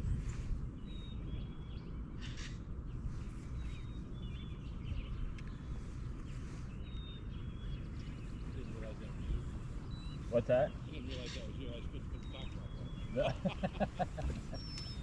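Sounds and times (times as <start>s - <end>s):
steady low rumble: 0.0s - 15.0s
birds whistling high notes: 6.8s - 15.0s.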